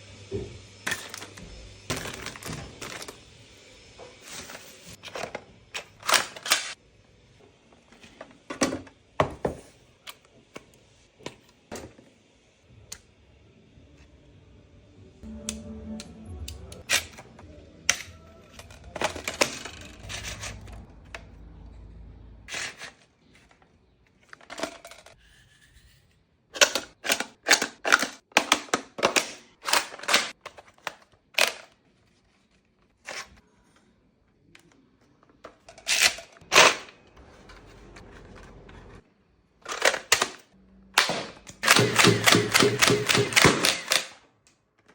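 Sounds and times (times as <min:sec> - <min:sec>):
toy blaster plastic clicks: 0:41.0 - 0:44.2.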